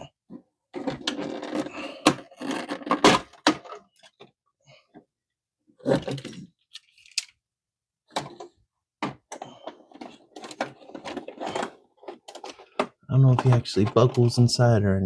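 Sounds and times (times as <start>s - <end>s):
plastic toy parts clicking: 6.2s - 7.4s.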